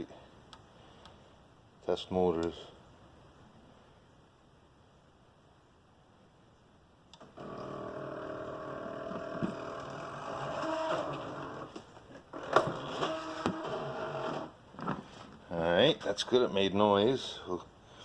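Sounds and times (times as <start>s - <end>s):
stepper motors whirring whine: 7.2s - 14.6s.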